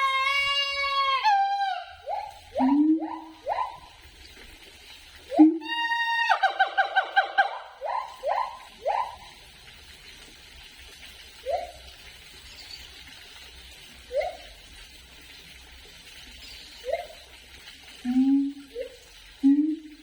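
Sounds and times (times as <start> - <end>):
gibbon whooping calls: 0.0 - 4.0, 5.3 - 9.3.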